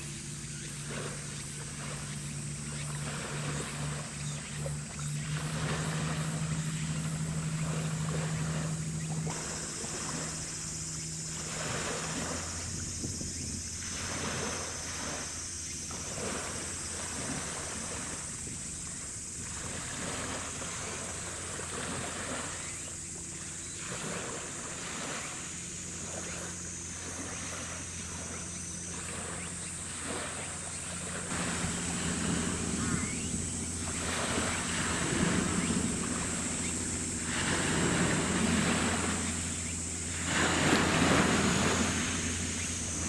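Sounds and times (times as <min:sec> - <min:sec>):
ship engine humming: 0:00.0 - 0:43.0
water: 0:00.0 - 0:43.0
wind noise: 0:11.5 - 0:15.2.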